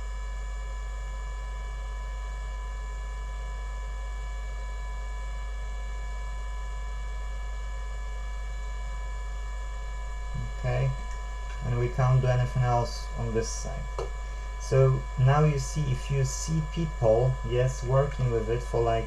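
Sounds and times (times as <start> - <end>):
electrical mains hum: 0.0 - 19.0
thin high whine: 8.2 - 19.0.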